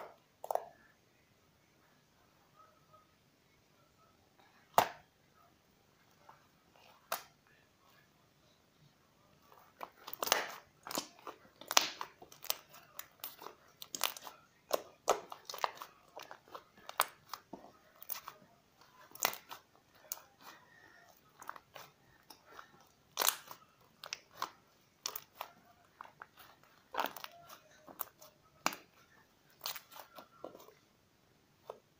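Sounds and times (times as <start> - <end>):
crunchy slime crackling and popping: 9.6 - 30.7.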